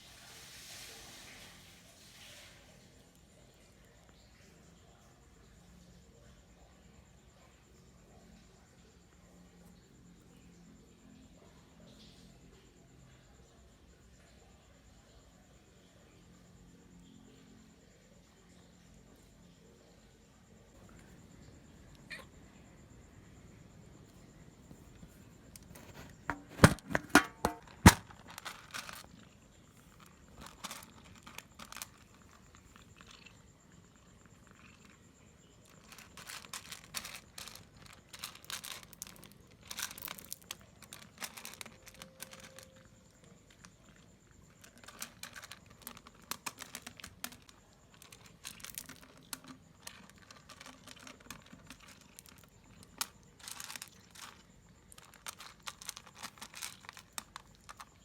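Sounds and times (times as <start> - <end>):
crinkling and crackling: 23.9 - 58.0.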